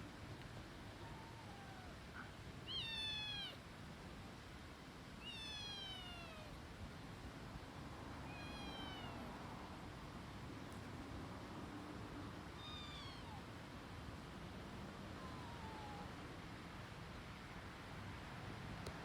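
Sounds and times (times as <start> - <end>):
cat meowing: 1.0 - 2.0, 2.7 - 3.6, 5.2 - 6.5, 8.3 - 9.3, 12.6 - 13.5, 15.2 - 16.2.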